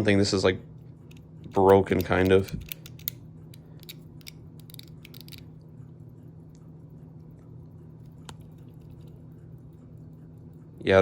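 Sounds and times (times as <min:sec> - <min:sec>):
low steady hum: 0:00.0 - 0:11.0
pocket watch metallic clicks: 0:01.1 - 0:05.4.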